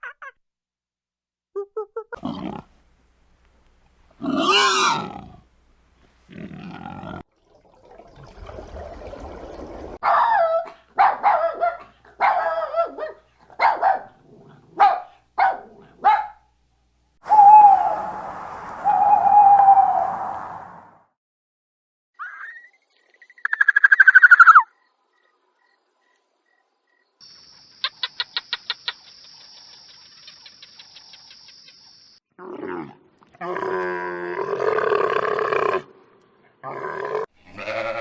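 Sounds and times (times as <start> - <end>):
dog barking: 10.0 - 16.5
dog howling: 17.3 - 20.4.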